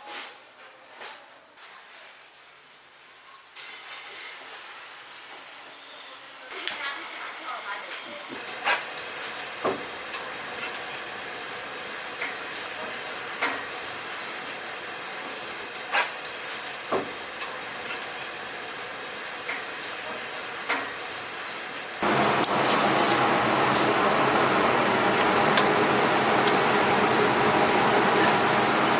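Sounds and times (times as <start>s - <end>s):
utensils knocking: 22.0s - 28.9s.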